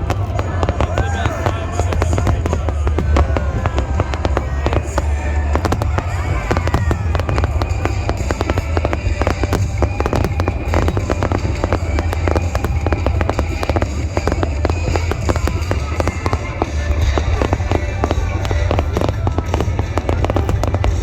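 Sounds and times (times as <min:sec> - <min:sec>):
fireworks crackling and popping: 0:00.0 - 0:21.0
low rumble: 0:00.0 - 0:21.0
music playing: 0:00.0 - 0:21.0.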